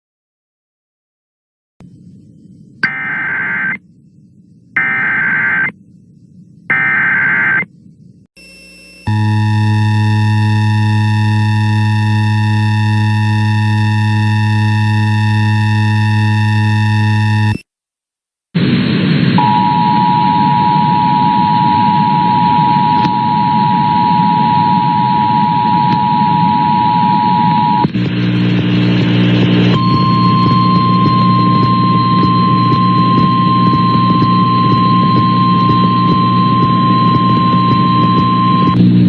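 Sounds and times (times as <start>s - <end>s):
low buzzing hum: 1.8s - 17.6s, 18.6s - 39.0s
two-tone attention signal: 29.7s - 38.8s.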